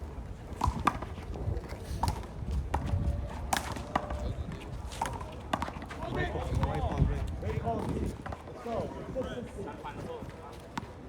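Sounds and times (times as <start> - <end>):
low wind rumble on microphone: 0.0 - 8.3.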